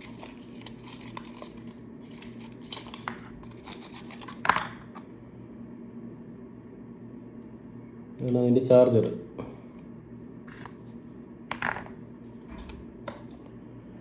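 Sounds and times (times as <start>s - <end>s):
packaging rustled and torn: 0.0s - 4.4s
steady low hum: 0.0s - 14.0s.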